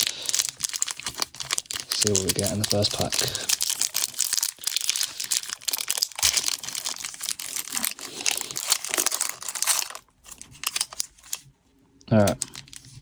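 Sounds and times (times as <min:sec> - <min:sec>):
wrapper crinkling and tearing: 0:00.0 - 0:11.5, 0:12.1 - 0:13.0.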